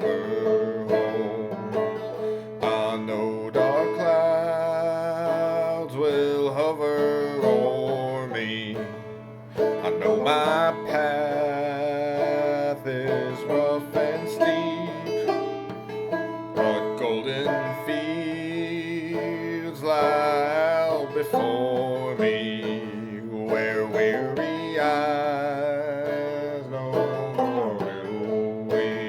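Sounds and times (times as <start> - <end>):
banjo melody: 0.0 - 29.0.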